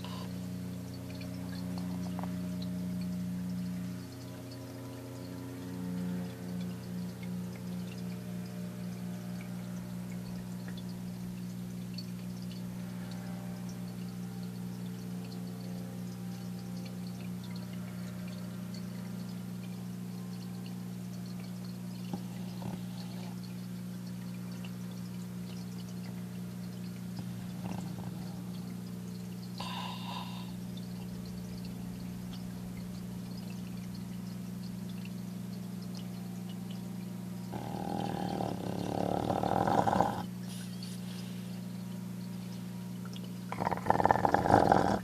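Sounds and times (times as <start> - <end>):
dog snoring: 0.0 - 0.4, 22.1 - 23.4, 27.2 - 28.8, 29.6 - 30.6, 37.5 - 41.0, 43.5 - 45.0.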